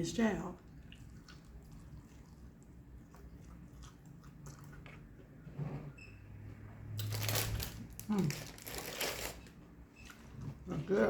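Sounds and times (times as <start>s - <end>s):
chewing crispy food: 0.6s - 5.2s.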